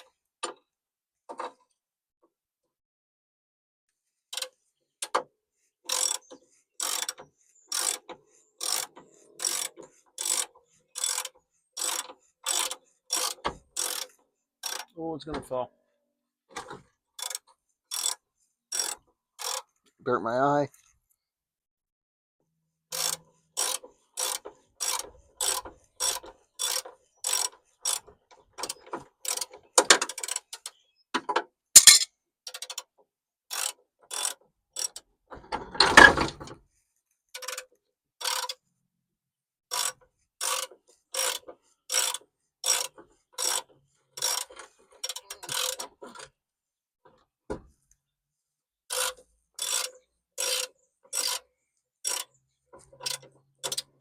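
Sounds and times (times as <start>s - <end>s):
metallic clatter: 31.8s - 32.1s.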